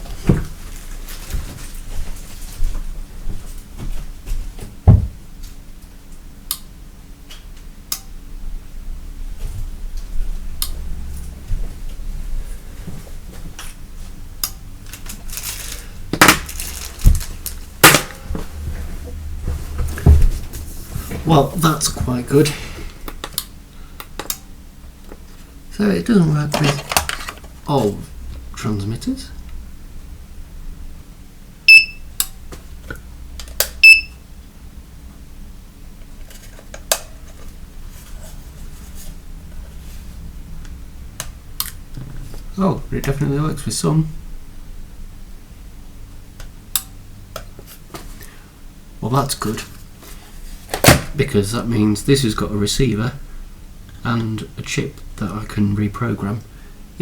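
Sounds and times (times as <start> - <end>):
low steady hum: 0.0 - 57.0
short high beeps: 31.7 - 32.0.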